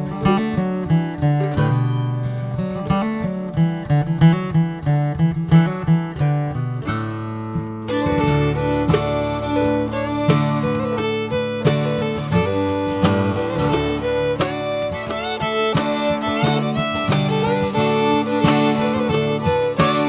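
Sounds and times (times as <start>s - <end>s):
bluegrass fiddle and guitar music: 7.0s - 20.0s.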